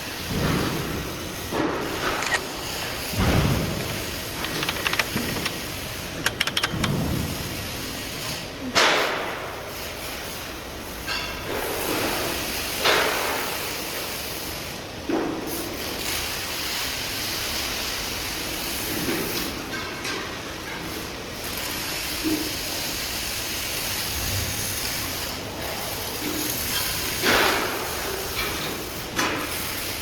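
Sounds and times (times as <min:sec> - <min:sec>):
factory machinery noise: 0:00.0 - 0:30.0
loud bangs and knocks: 0:00.2 - 0:07.6.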